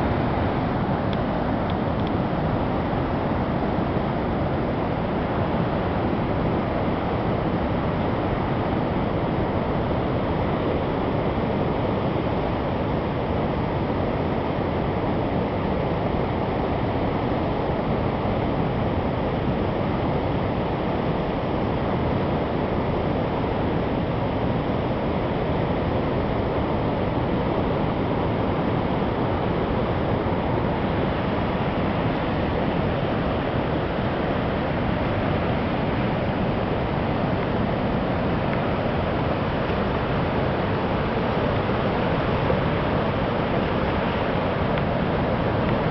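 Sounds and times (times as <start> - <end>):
waterfall and rapids roaring: 0.0 - 45.9.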